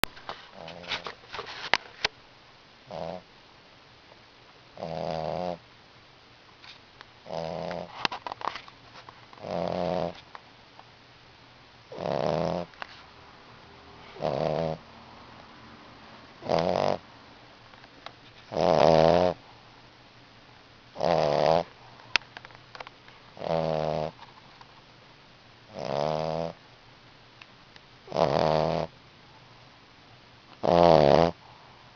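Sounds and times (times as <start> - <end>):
puppy snoring: 0.5 - 1.1, 2.8 - 3.3, 4.8 - 5.6, 7.2 - 8.1, 9.4 - 10.2, 11.9 - 13.0, 14.0 - 14.9, 16.4 - 17.0, 18.4 - 19.4, 20.9 - 21.7, 23.4 - 24.2, 25.7 - 26.6, 28.0 - 29.0, 30.6 - 31.7.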